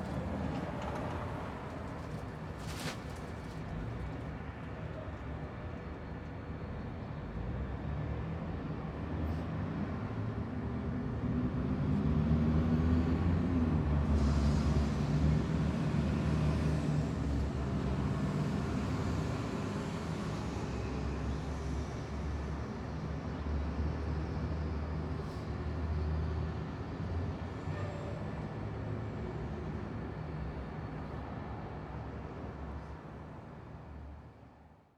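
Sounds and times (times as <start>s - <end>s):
bus engine running: 0.0s - 4.0s.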